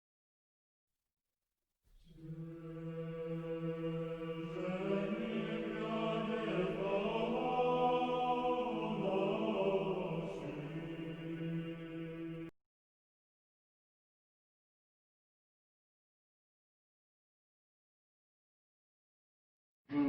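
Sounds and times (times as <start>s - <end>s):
choir chanting: 2.0s - 12.5s.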